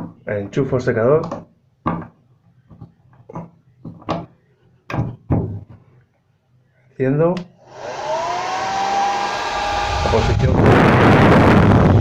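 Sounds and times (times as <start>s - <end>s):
hair dryer blowing hiss: 7.6s - 12.0s
hair dryer motor whine: 7.6s - 12.0s.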